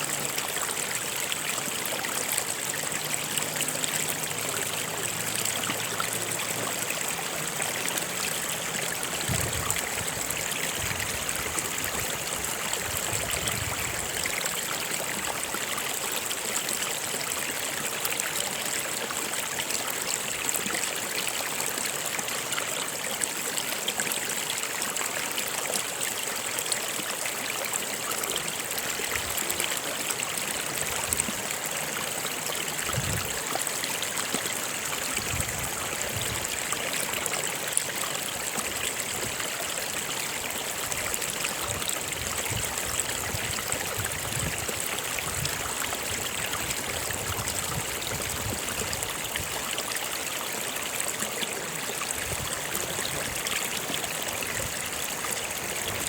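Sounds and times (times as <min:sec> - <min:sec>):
stream running over rocks: 0:00.0 - 0:56.0.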